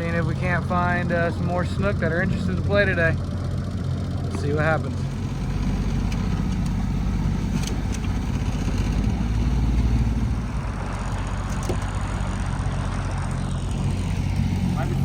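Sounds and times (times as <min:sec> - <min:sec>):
boat motor running: 0:00.0 - 0:15.0.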